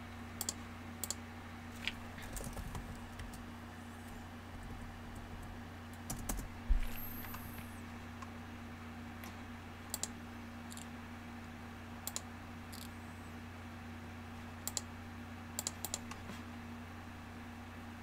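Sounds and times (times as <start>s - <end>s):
steady low hum: 0.0s - 18.0s
computer mouse clicks: 0.4s - 1.2s, 9.9s - 10.9s, 12.0s - 12.9s, 14.6s - 14.9s, 15.6s - 16.2s.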